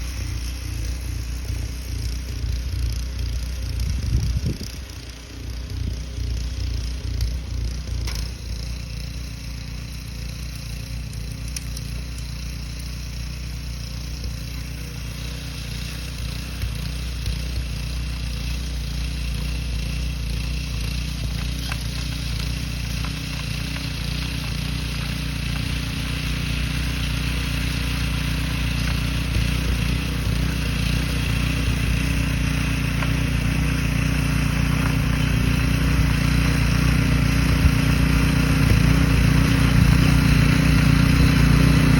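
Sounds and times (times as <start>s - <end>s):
engine running: 0.0s - 41.9s.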